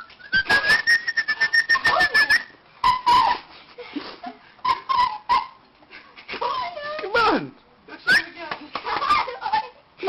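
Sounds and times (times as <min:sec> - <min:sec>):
person whistling high note: 0:00.0 - 0:03.3
dog whining: 0:00.2 - 0:03.5, 0:04.6 - 0:05.7.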